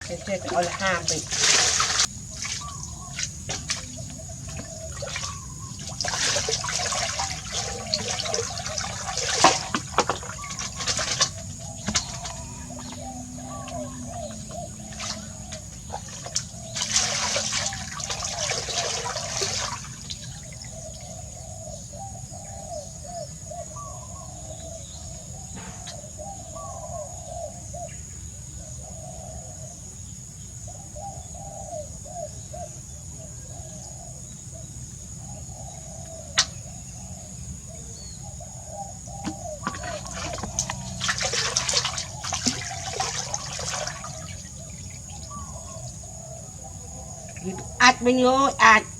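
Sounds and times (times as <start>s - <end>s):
water pouring and splashing: 0.0s - 12.6s, 14.3s - 20.7s, 39.2s - 46.0s
birds calling: 0.0s - 48.9s.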